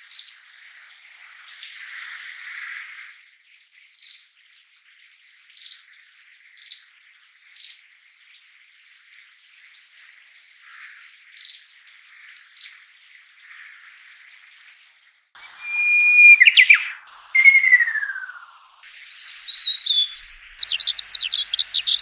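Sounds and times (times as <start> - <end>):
bird calls sliding downward: 15.4 - 22.0
thin high bird calls: 15.4 - 22.0.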